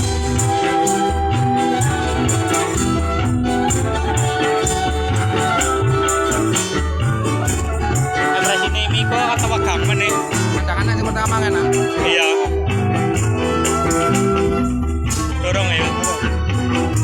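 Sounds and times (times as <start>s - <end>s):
held keyboard notes: 0.0s - 17.0s
high percussion strokes: 0.0s - 17.0s
beat with pulsing bass line: 6.9s - 17.0s.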